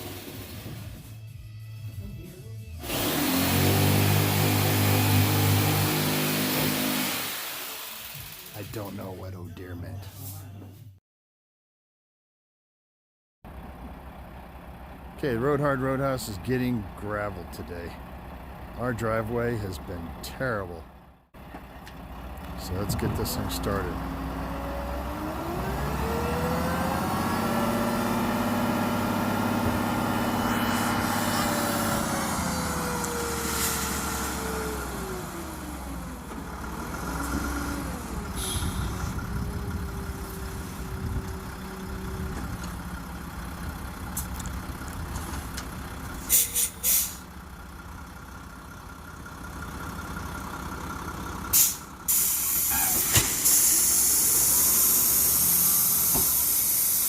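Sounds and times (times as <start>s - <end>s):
diesel truck engine revving: 2.5s - 9.7s, 13.5s - 57.0s
air brake hisses: 38.4s - 39.1s, 46.2s - 47.2s, 51.5s - 57.0s.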